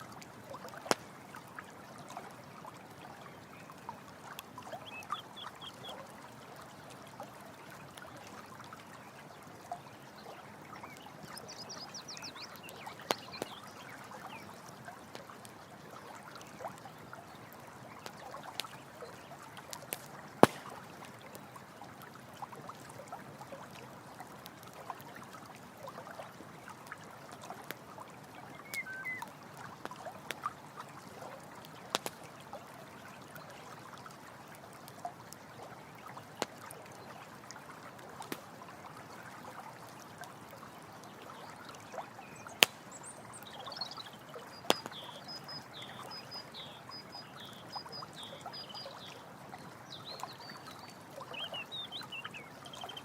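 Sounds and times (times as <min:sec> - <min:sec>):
stream water trickling: 0:00.0 - 0:53.0
campfire crackling and popping: 0:00.2 - 0:01.2, 0:12.3 - 0:13.8, 0:14.4 - 0:15.6, 0:17.4 - 0:18.8, 0:19.6 - 0:21.6, 0:26.8 - 0:30.5, 0:31.6 - 0:32.4, 0:36.3 - 0:36.7, 0:38.0 - 0:38.6, 0:42.5 - 0:43.6, 0:44.5 - 0:47.7
faint chirps: 0:28.4 - 0:29.3.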